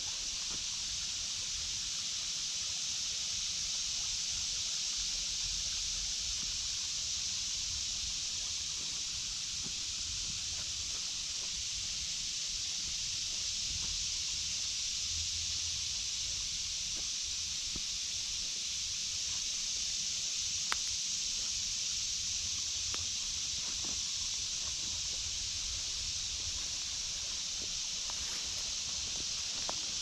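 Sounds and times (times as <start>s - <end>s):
cicadas buzzing: 0.0s - 30.0s
footsteps on leaf litter: 26.5s - 30.0s.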